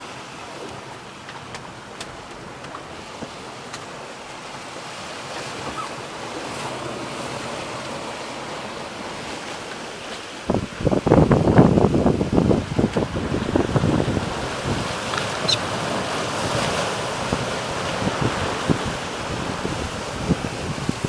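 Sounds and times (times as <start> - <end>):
water rushing past a boat: 0.0 - 21.0
wind on microphone: 10.4 - 21.0.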